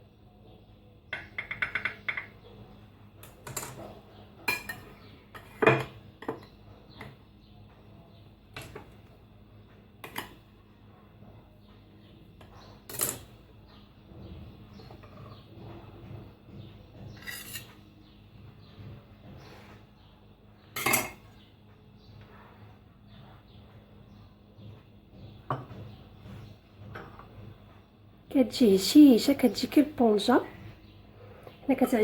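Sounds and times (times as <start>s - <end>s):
utensils tapping on plates: 1.2s - 2.4s, 3.2s - 7.2s, 20.8s - 21.2s
cutlery and dishes clinking: 3.2s - 6.6s, 12.9s - 13.3s, 17.1s - 17.8s, 20.8s - 21.3s.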